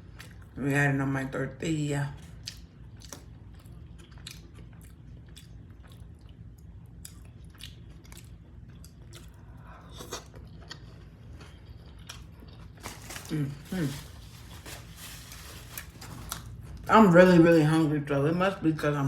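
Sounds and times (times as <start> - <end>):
steady low hum: 0.0 - 19.0
person chewing: 2.4 - 14.9.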